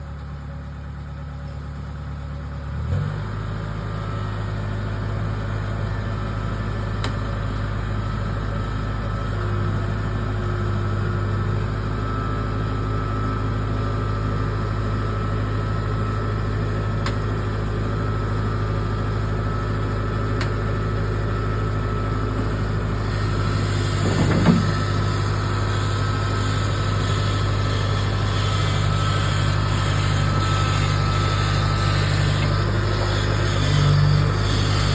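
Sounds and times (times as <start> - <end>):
vehicle engine running: 0.0 - 34.9
brief knock: 24.0 - 24.8.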